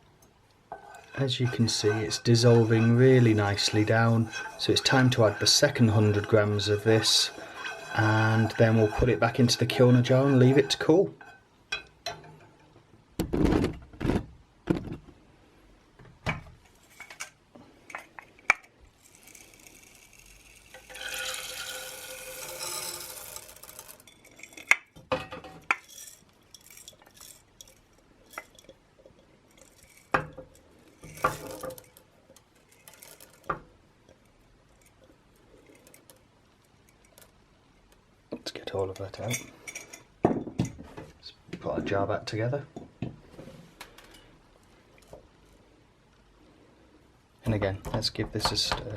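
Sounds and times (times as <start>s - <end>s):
wax pellets rattling into pan: 0.9s - 11.0s, 18.8s - 25.0s, 25.6s - 38.1s.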